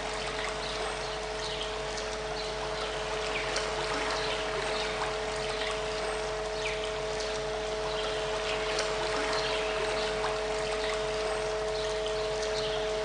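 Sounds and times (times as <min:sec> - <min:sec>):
flowing stream: 0:00.0 - 0:13.0
low steady hum: 0:00.0 - 0:13.0.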